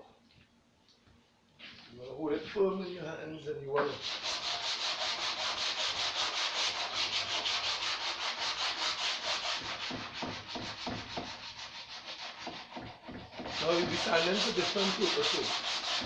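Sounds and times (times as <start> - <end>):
sandpaper rubbing on wood: 3.9 - 16.0.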